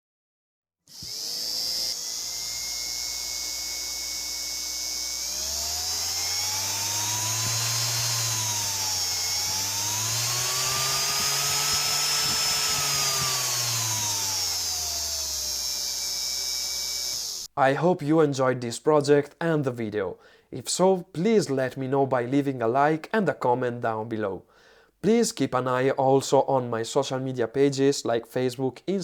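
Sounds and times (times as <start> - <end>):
electric motor whining: 0.9 - 17.5.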